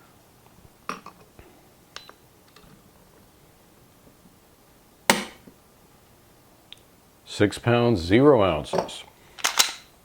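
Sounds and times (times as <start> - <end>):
pistol handling clicks and knocks: 9.4 - 9.9.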